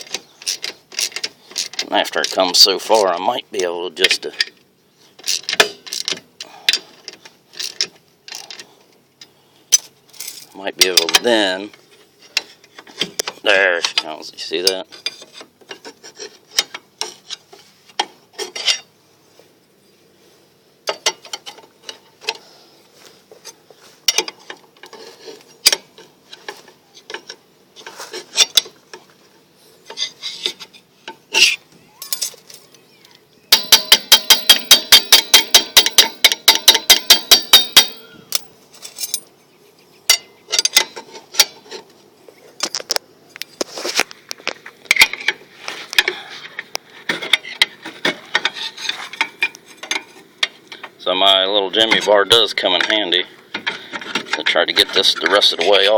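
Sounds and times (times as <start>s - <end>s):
hand tools clinking on steel: 29.9s - 32.8s, 33.5s - 39.4s, 40.1s - 41.7s
ratchet wrench clicking: 33.5s - 38.5s.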